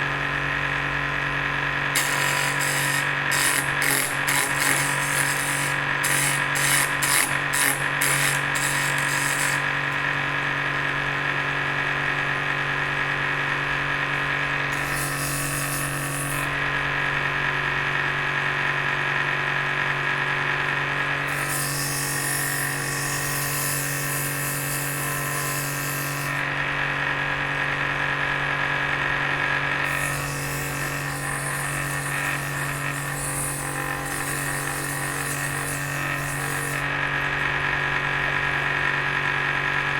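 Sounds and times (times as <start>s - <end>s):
drill press motor running: 1.0s - 11.5s, 26.1s - 39.9s
high-pitched cutting noise: 2.0s - 9.7s.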